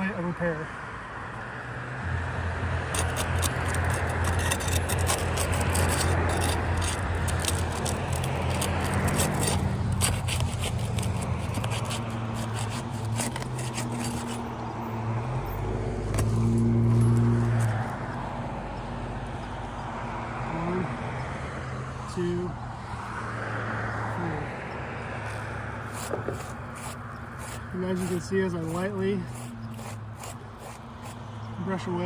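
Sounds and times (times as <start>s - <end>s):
vehicle engine humming: 1.0s - 32.0s
shingle sealant crackling: 2.9s - 14.7s, 25.3s - 31.3s.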